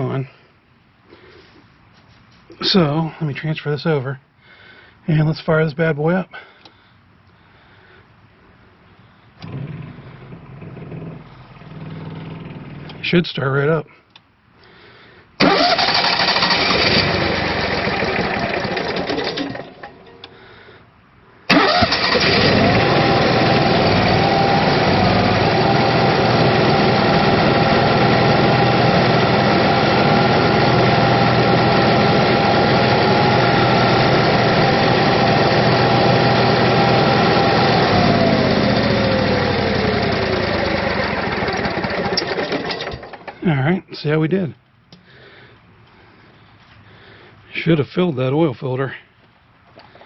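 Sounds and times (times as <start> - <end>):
generator cranking and starting: 9.3 - 13.1, 15.4 - 20.7, 21.5 - 43.5
generator running: 9.4 - 13.1, 15.4 - 20.7, 21.5 - 43.6.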